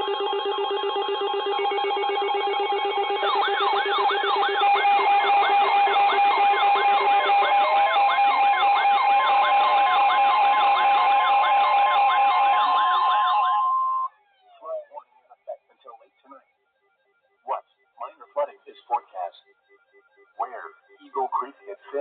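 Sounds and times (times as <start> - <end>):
siren-like pitch sweep: 0.0 - 15.0.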